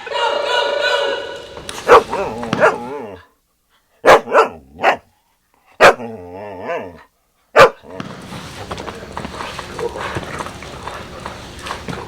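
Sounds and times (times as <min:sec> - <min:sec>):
dog barking and whining: 0:00.0 - 0:03.3, 0:04.0 - 0:05.1, 0:05.7 - 0:08.0.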